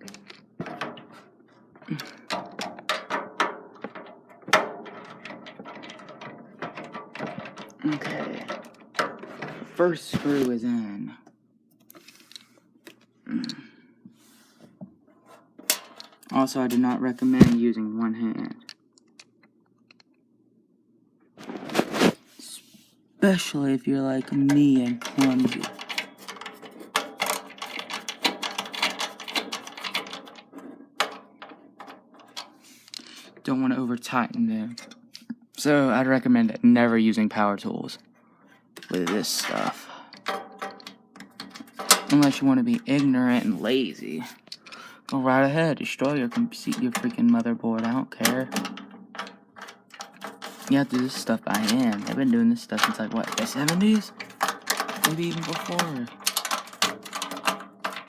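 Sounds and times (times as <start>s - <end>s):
screwdriver metallic clicks and scrapes: 24.3s - 33.2s, 47.8s - 58.0s.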